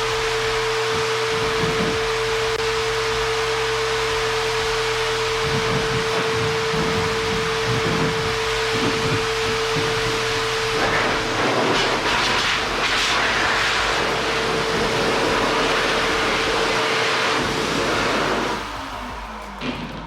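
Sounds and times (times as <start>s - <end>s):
blower whine: 0.0s - 20.0s.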